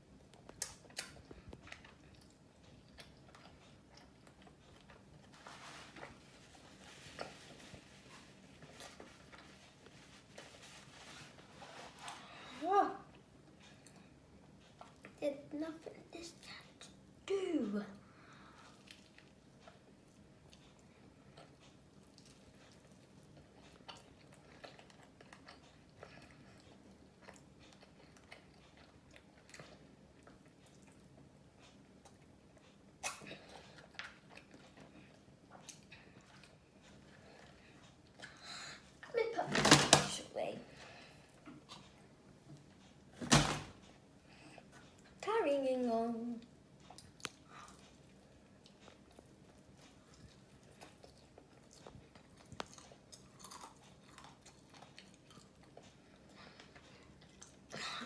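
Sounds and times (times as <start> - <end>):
chewing fried chicken: 0.0 - 12.2, 18.0 - 39.1, 46.4 - 58.0.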